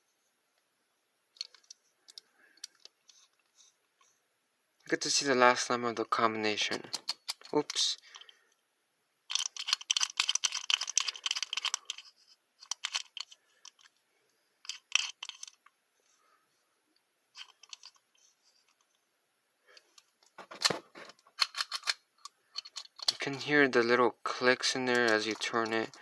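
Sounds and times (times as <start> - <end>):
combination padlock clicking: 21.4 - 22.0.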